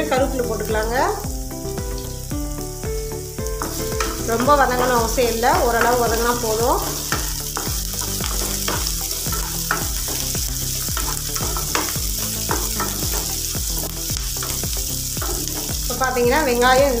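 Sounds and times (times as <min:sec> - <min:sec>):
onions sizzling in hot oil: 0:00.0 - 0:17.0
spoon scraping a pan: 0:03.6 - 0:16.1.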